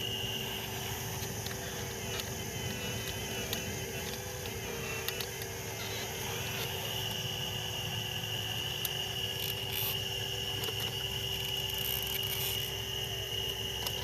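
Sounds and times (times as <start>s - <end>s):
electric motor whining: 0.0s - 14.0s
light clicks: 3.0s - 5.6s.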